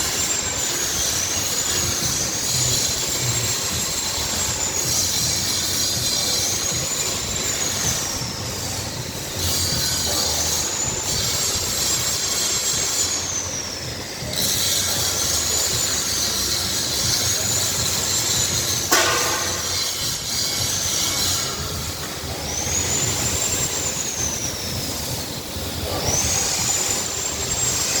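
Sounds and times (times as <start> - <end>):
high-pitched machine whine: 0.0 - 28.0
steady mechanical hum: 0.0 - 28.0.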